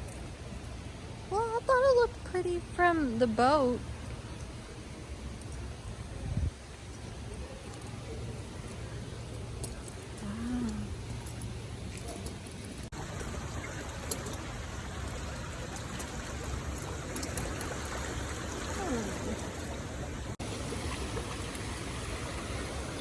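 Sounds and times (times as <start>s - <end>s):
stream water rushing: 12.9s - 23.0s.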